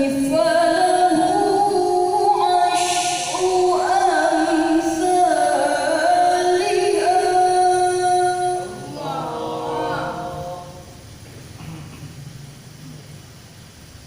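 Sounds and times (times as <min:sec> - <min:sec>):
woman reciting melodically: 0:00.0 - 0:11.0.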